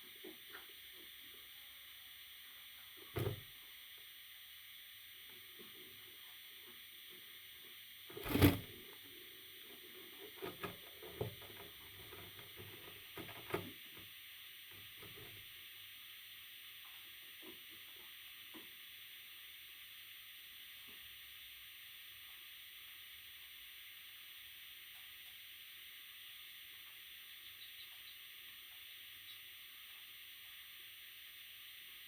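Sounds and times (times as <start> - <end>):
rustling scrapes and knocks: 8.1 - 8.8.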